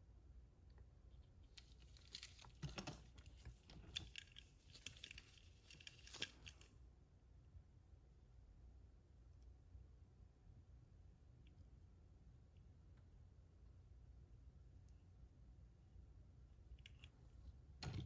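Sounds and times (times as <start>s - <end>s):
toy trucks clicking and rustling: 1.5s - 6.8s.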